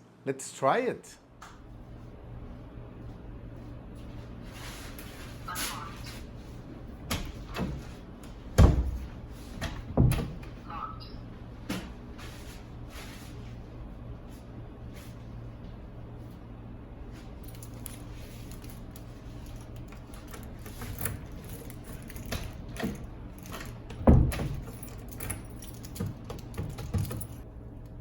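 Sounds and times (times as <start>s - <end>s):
metal clinks of lock and keys: 17.3s - 27.4s.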